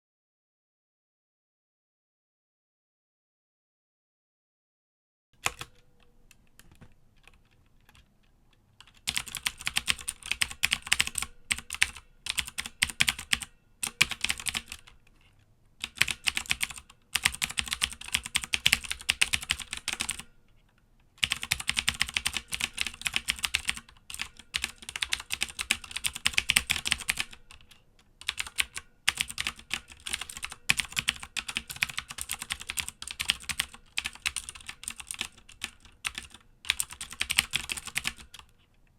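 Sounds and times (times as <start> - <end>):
clicky mechanical keyboard typing: 5.4 - 8.1, 8.8 - 15.2, 15.8 - 20.3, 21.2 - 38.5.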